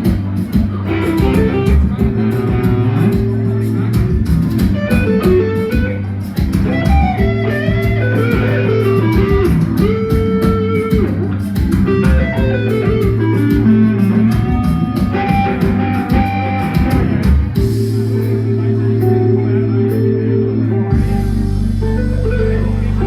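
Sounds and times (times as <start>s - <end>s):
drum beat: 0.0s - 18.0s
bass guitar: 0.0s - 23.0s
electric guitar: 0.0s - 23.0s.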